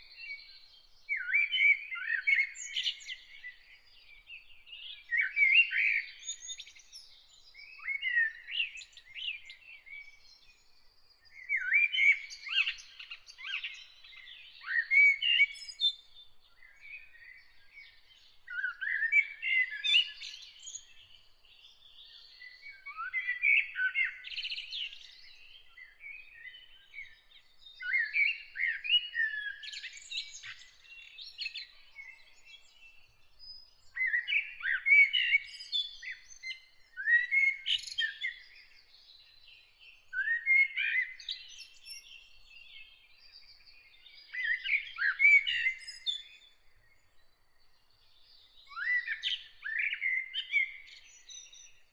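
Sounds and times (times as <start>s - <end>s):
songbirds warbling: 33.6s - 42.2s.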